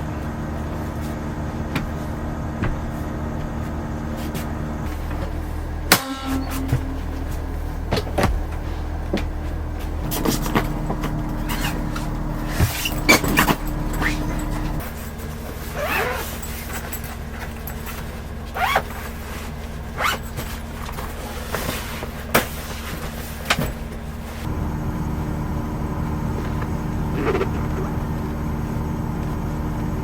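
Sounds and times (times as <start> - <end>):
vehicle engine humming: 1.7 - 15.1, 24.0 - 30.0
short rising squeaks: 4.9 - 14.8.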